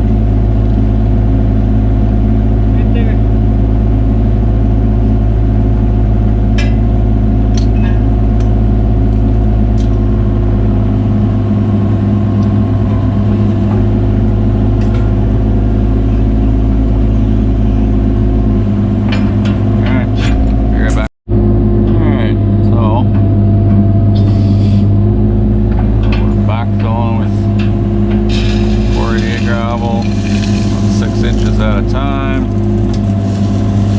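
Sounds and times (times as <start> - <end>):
diesel engine running: 0.0 - 33.9
sharp metallic knocks: 6.5 - 8.5.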